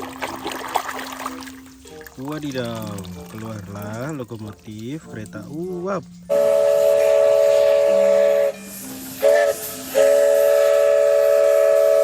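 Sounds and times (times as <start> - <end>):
steam locomotive whistle blowing: 6.3 - 12.0.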